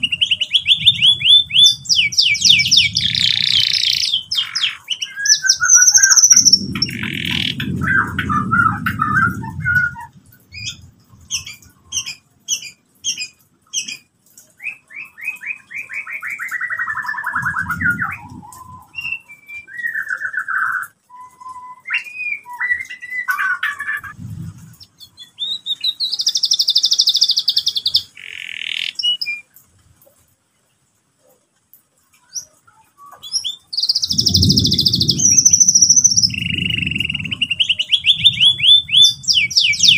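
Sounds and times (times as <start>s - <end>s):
canary singing: 0.0s - 29.5s, 32.3s - 39.9s
low thumps: 24.1s - 25.0s.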